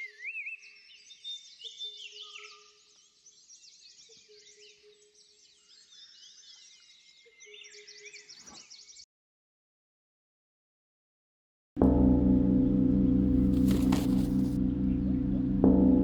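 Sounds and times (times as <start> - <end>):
small birds chirping: 0.0 - 9.1.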